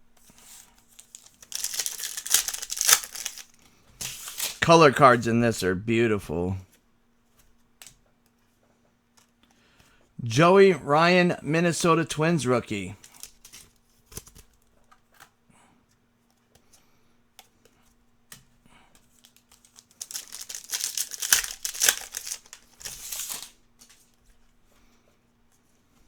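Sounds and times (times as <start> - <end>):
cards clicking and rustling: 0.9 - 4.6, 18.4 - 24.0
foil wrapper tearing and crinkling: 1.0 - 3.6, 19.2 - 23.6.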